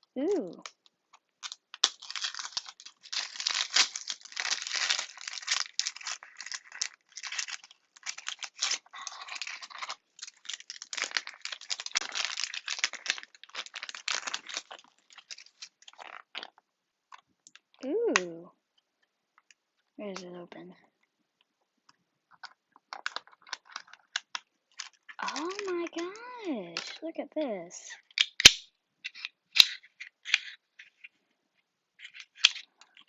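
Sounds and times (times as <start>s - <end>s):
packaging crinkling and tearing: 0.6s - 16.6s, 22.4s - 27.0s.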